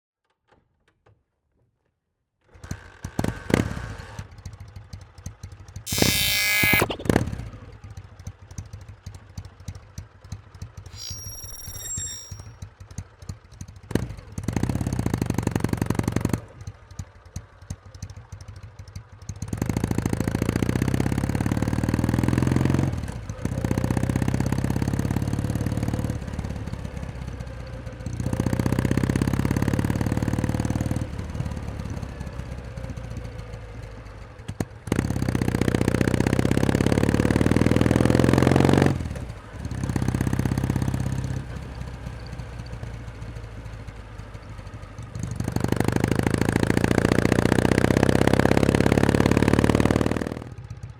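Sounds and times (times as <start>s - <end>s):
motorcycle engine idling: 41.0s - 46.8s.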